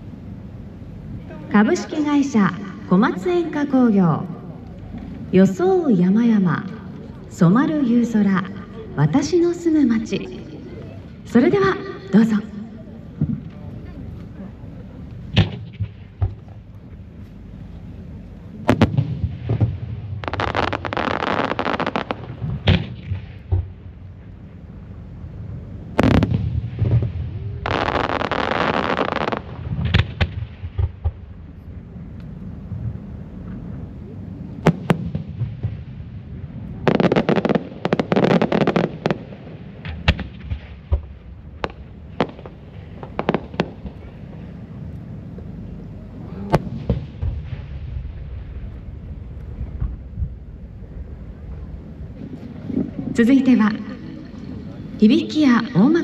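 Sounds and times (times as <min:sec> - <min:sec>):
fireworks crackling: 0:18.5 - 0:23.8, 0:25.9 - 0:31.2, 0:36.5 - 0:44.4.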